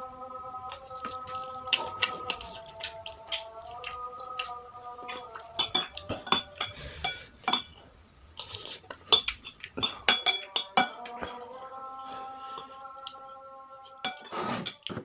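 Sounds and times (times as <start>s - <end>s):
metal cutlery clinking on a dish: 4.9s - 7.8s, 8.4s - 11.2s, 14.0s - 15.0s.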